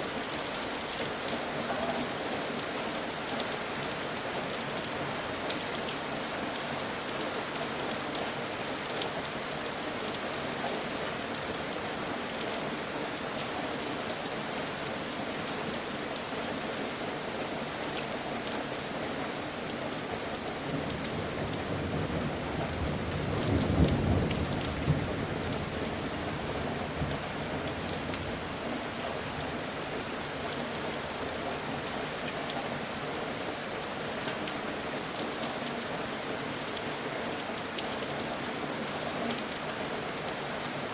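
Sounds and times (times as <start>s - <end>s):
steady rain pattering: 0.0s - 40.9s
thunder rumbling and cracking: 21.5s - 25.6s.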